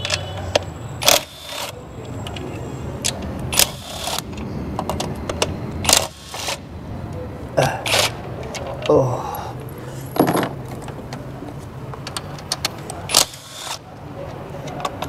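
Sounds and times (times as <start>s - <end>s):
metal tools clinking and scraping: 9.9s - 11.0s.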